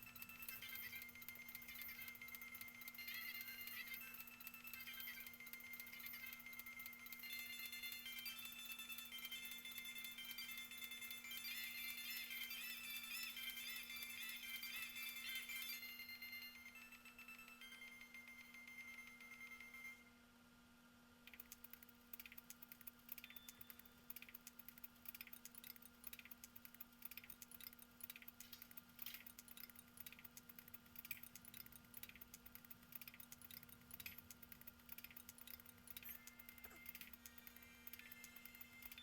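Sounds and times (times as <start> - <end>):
low electrical hum: 0.0 - 39.0
computer keys clicking: 21.3 - 39.0.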